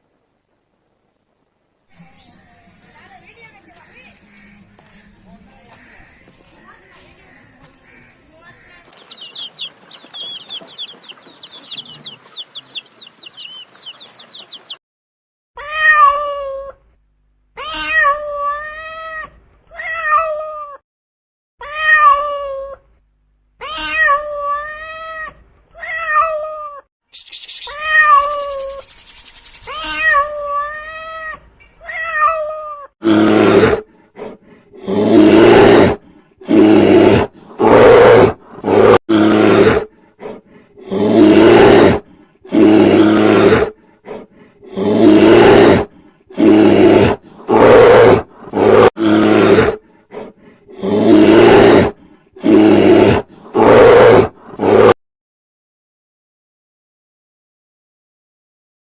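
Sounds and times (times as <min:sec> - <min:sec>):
lion roaring: 0:34.8 - 0:39.9, 0:40.8 - 0:49.8, 0:50.7 - 0:55.0.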